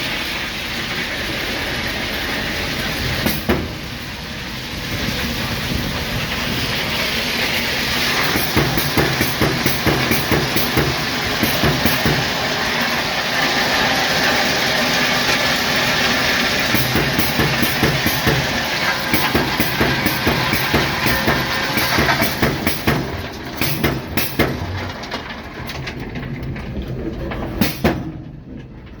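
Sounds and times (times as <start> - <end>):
train rumbling on track: 0.0 - 29.0
rattles and clanks: 5.2 - 29.0.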